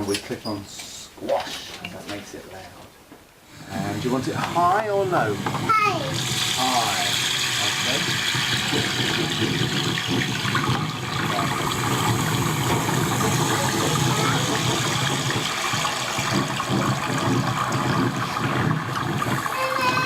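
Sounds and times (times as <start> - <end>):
water pouring through a speaker: 6.0 - 20.0.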